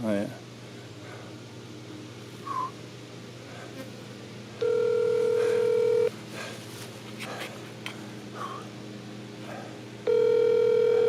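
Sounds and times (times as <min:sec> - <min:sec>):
phone ringback tone: 0:04.6 - 0:06.1, 0:10.1 - 0:11.0.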